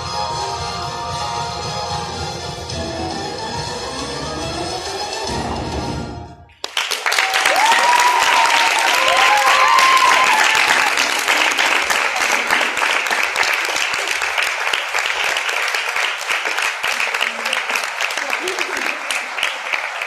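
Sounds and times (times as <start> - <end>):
audience cheering: 6.6 - 15.4
audience applauding: 6.6 - 20.0.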